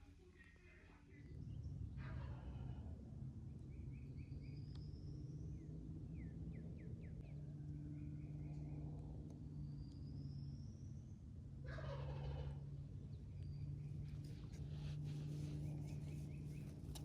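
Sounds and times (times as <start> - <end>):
songbirds singing: 3.5 - 11.3, 12.8 - 17.0.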